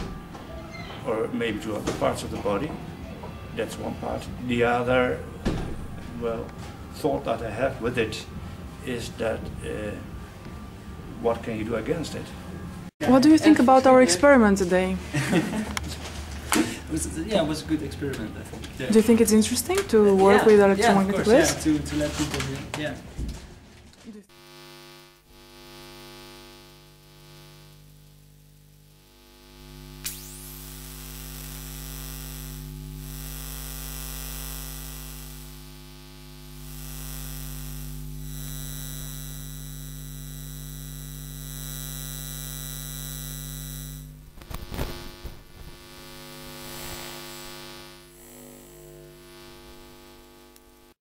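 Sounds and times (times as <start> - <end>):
steady mains hum: 0.0 - 51.0
high electronic whines: 24.3 - 50.9
electronic crackling: 24.3 - 51.0.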